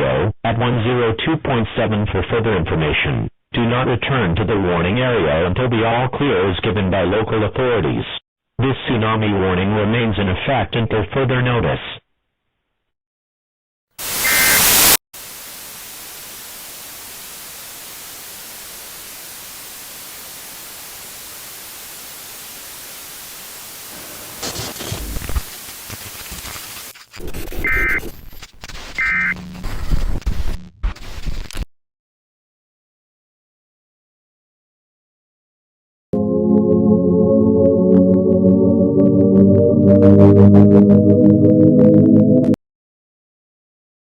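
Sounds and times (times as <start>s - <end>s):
static hiss: 14.0s - 31.6s
emergency alert data tones: 14.1s - 15.0s, 29.0s - 29.4s
sustained organ chord: 36.2s - 42.4s.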